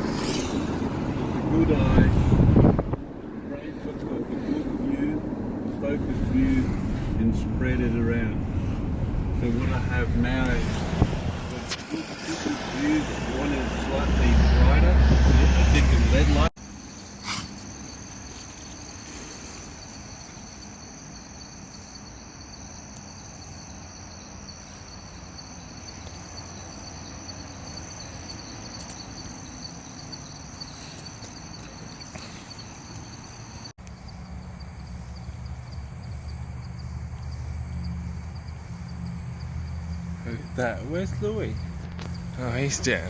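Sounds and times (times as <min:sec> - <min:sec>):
low hum: 0:00.0 - 0:11.7, 0:33.0 - 0:43.0
insects chirring: 0:00.0 - 0:43.0
higher-pitched insect drone: 0:11.5 - 0:43.0.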